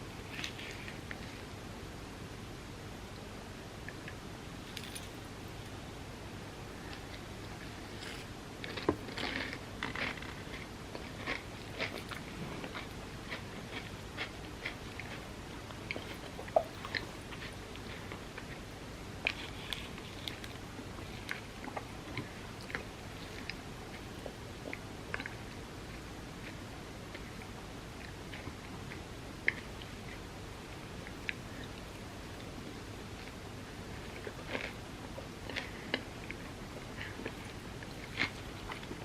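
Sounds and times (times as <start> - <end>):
crisp chewing crunches: 6.9 - 27.4, 31.0 - 39.0.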